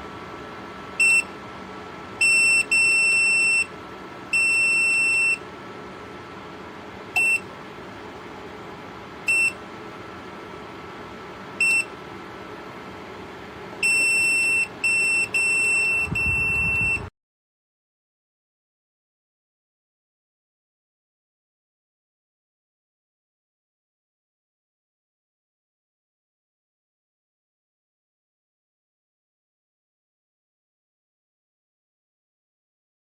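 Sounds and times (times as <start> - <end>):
space heater fan hum: 0.0 - 17.1
control panel beeps: 1.0 - 1.3, 2.2 - 3.7, 4.4 - 5.4, 7.2 - 7.5, 9.3 - 9.6, 11.6 - 11.9, 13.8 - 17.1.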